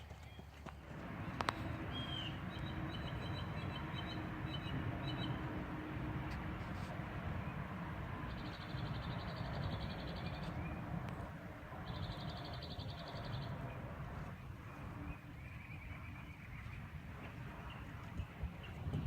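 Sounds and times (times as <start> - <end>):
wind rumble on microphone: 0.8 - 19.0
high trilled bird calls: 1.2 - 5.6, 11.8 - 13.6.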